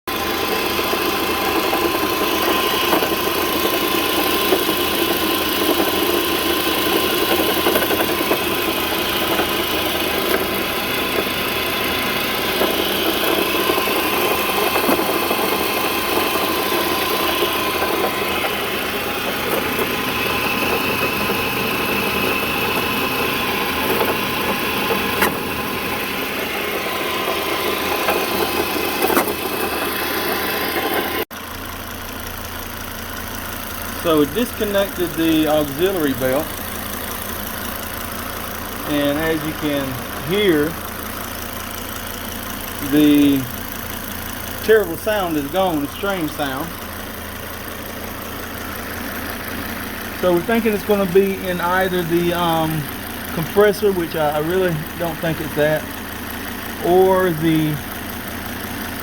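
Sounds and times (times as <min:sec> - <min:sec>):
alternator knocking: 0:00.1 - 0:31.2
car engine idling with whine: 0:00.1 - 0:59.0.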